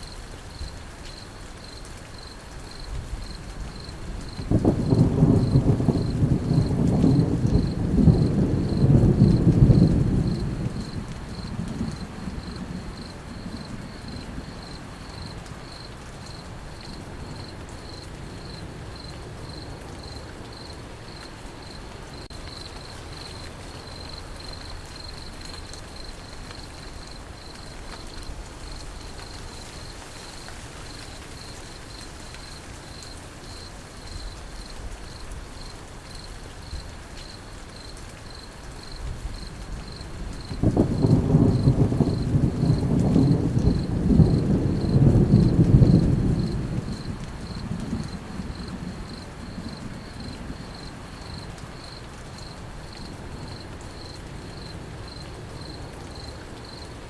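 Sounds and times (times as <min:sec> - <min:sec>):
crickets chirping: 0:00.0 - 0:57.0
steady rain: 0:00.0 - 0:57.0
thunder rumbling: 0:02.9 - 0:15.8, 0:39.0 - 0:52.0.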